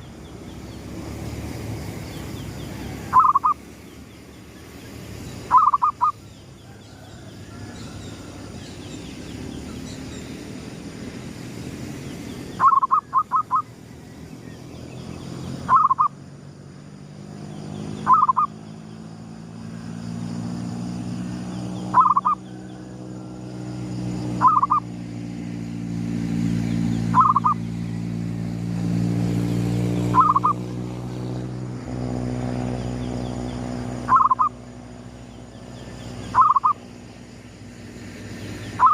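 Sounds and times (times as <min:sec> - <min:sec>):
dove cooing: 0:03.0 - 0:03.6, 0:05.5 - 0:06.2, 0:12.6 - 0:13.6, 0:15.7 - 0:16.1, 0:18.0 - 0:18.5, 0:22.0 - 0:22.4, 0:24.4 - 0:24.9, 0:27.2 - 0:27.6, 0:30.2 - 0:30.6, 0:34.1 - 0:34.5, 0:36.4 - 0:36.8.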